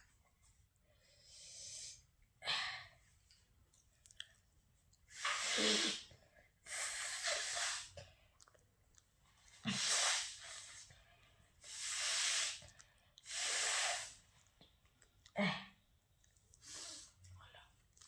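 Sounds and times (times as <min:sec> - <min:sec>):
person blowing air through nose: 0:05.1 - 0:08.0, 0:09.6 - 0:10.9, 0:11.6 - 0:14.3.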